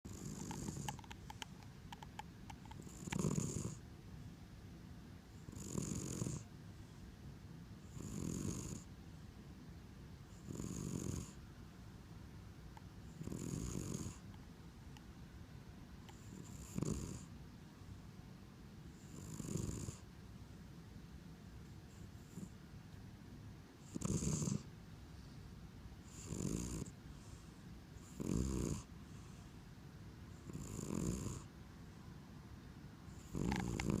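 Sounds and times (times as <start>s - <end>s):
cat snoring with whistle: 0.1s - 1.2s, 2.7s - 3.8s, 5.4s - 6.5s, 7.8s - 8.9s, 10.3s - 11.4s, 13.0s - 14.3s, 16.1s - 17.3s, 18.9s - 20.1s, 21.9s - 22.6s, 23.8s - 24.7s, 26.0s - 27.4s, 28.0s - 29.4s, 30.3s - 31.5s, 33.1s - 34.0s.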